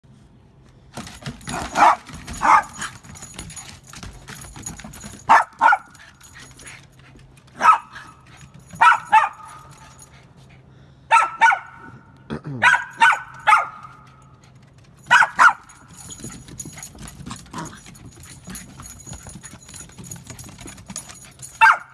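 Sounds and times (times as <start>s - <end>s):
scuffling clicks: 1.0s - 10.3s, 13.0s - 21.9s
dog barking: 1.4s - 3.6s, 5.1s - 6.6s, 7.6s - 10.0s, 11.1s - 14.2s, 15.0s - 16.7s, 21.4s - 21.9s.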